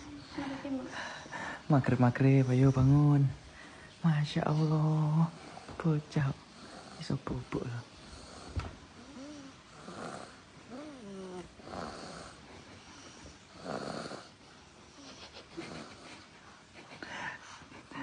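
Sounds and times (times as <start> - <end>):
child snoring: 8.0 - 16.2.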